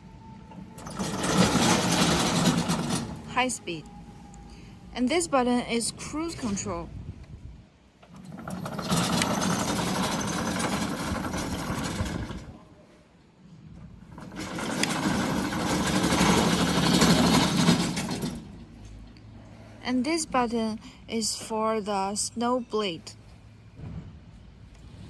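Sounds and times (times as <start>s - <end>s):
electric mower motors running: 0.8s - 3.4s, 8.1s - 12.5s, 14.1s - 18.6s.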